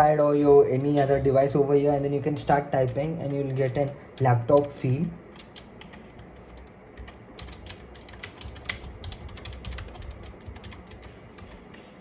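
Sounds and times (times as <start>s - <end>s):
keyboard typing clicks: 5.4s - 11.6s.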